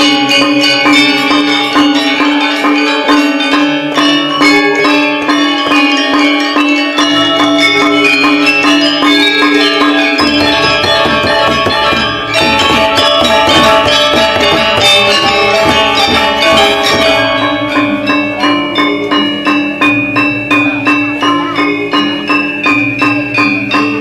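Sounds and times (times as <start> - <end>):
gamelan ensemble playing: 0.0 - 24.0.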